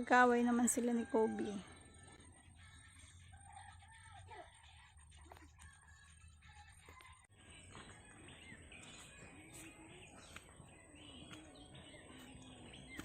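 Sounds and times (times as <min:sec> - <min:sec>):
birds chirping: 0:00.0 - 0:13.0
quiet rural background noise: 0:00.0 - 0:13.0.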